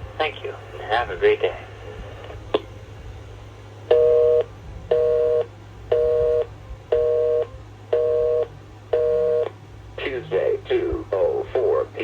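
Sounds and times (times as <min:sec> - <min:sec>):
telephone busy signal beeps: 0:03.9 - 0:09.5.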